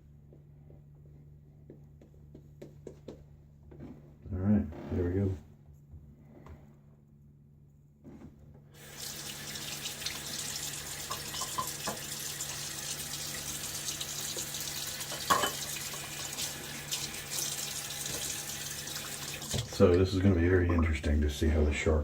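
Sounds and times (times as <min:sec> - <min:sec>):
sink tap turned on: 0:08.8 - 0:20.0
water running into basin: 0:08.8 - 0:21.7.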